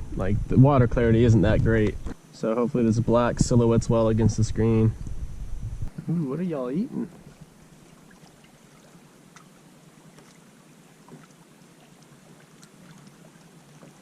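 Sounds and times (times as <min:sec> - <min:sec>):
water lapping against hull: 0:06.8 - 0:14.0.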